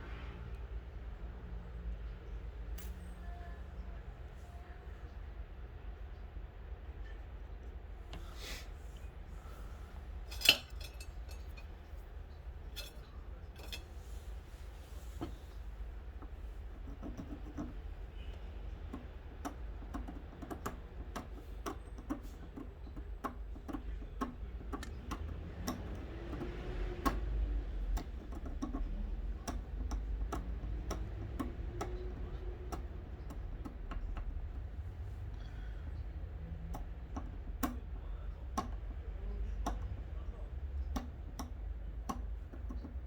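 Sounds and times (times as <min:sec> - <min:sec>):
steady low hum: 0:00.0 - 0:43.0
small sharp clicks and taps: 0:15.2 - 0:43.0.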